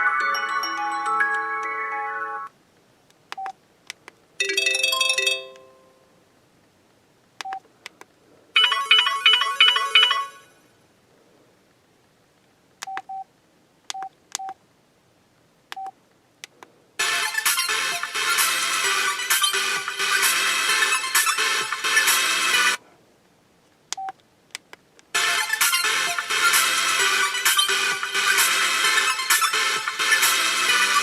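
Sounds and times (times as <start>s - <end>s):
phone ringtones: 8.6s - 10.6s.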